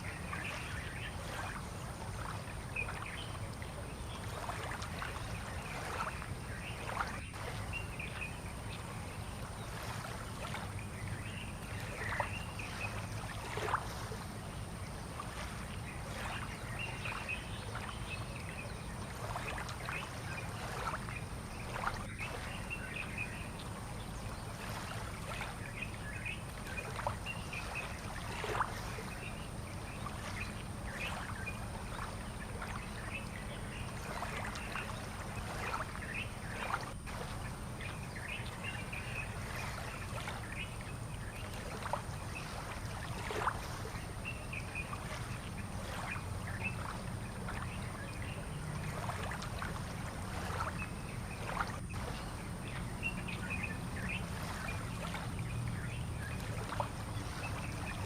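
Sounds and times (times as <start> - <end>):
steady low hum: 0.0 - 58.0
water lapping against boats: 0.0 - 58.0.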